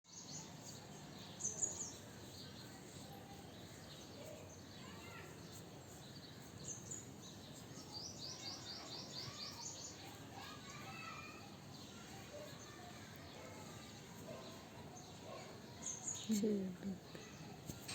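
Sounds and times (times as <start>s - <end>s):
small birds chirping: 0.0s - 17.9s.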